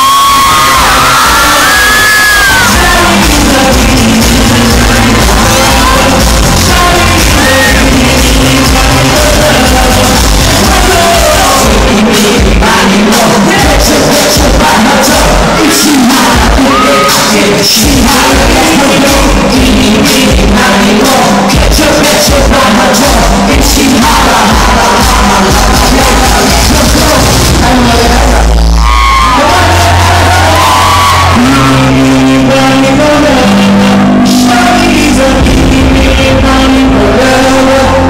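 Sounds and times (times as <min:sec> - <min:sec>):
people shouting and yelling: 0:00.0 - 0:03.2, 0:14.5 - 0:17.6, 0:24.2 - 0:32.3
loud music with singing: 0:00.0 - 0:38.0.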